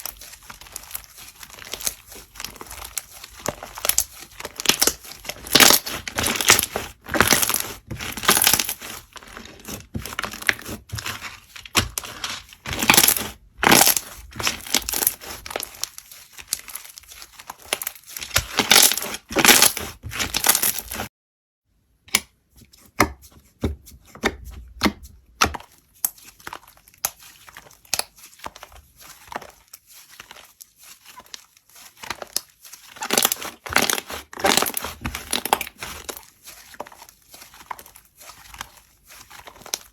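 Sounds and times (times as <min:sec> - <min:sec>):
slime crackling and popping: 0:00.0 - 0:21.1, 0:26.0 - 0:28.8, 0:31.0 - 0:39.9.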